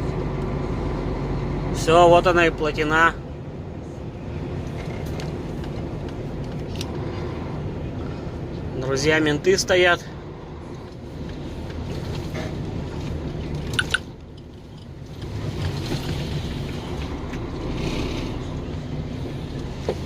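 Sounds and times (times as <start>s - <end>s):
diesel truck engine drone: 0.0s - 20.0s
road noise: 0.0s - 20.0s.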